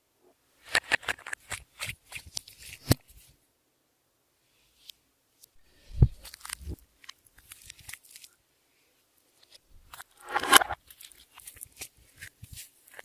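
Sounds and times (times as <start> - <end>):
crackly clicks and pops: 4.8 - 8.4.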